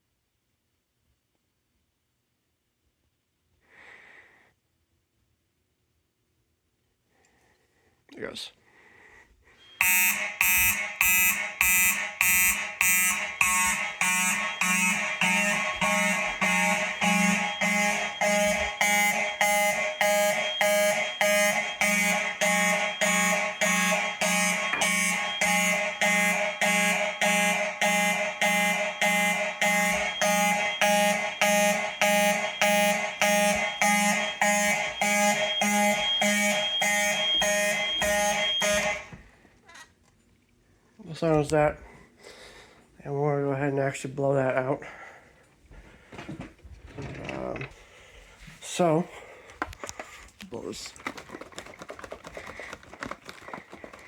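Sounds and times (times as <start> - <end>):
fire alarm horns pulsing: 9.7 - 39.2
steady high tone: 9.8 - 39.1.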